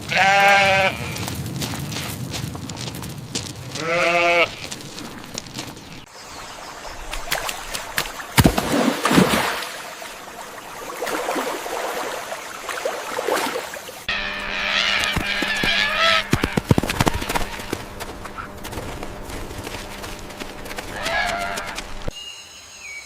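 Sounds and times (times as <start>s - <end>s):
farm animal bleating: 0.0s - 1.4s, 3.7s - 5.1s, 14.1s - 17.8s, 20.8s - 21.9s.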